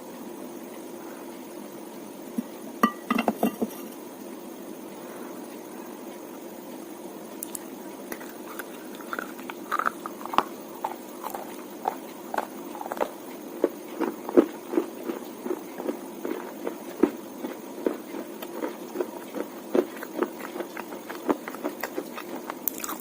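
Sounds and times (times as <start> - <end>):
slate being chewed crunches: 7.4 - 23.0.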